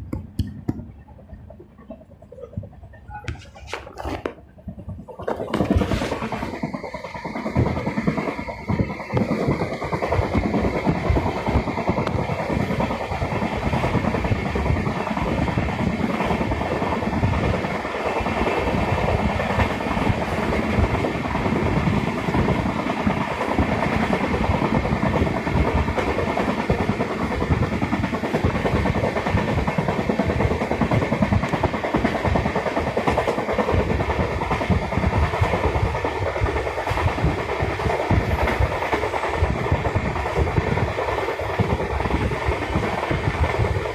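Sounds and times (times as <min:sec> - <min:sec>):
train rumbling: 0:00.0 - 0:43.9.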